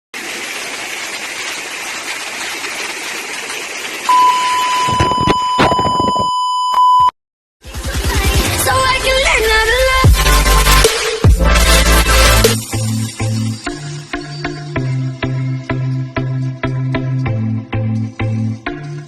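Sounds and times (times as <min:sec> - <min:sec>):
high electronic beep tone: 0:04.1 - 0:07.1
music: 0:07.6 - 0:19.0.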